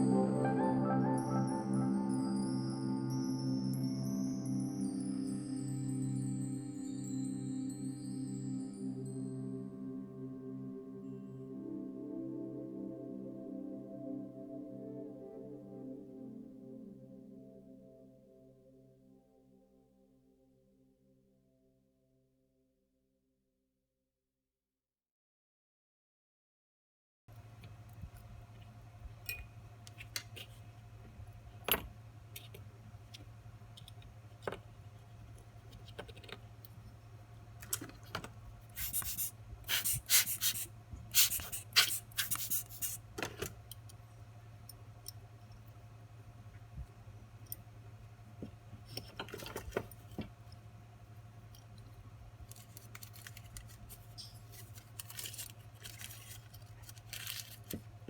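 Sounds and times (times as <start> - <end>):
low hum: 0.0 - 20.9.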